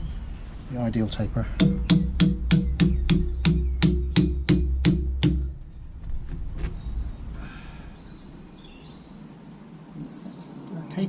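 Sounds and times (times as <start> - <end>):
hammer ringing on steel: 1.6 - 5.6.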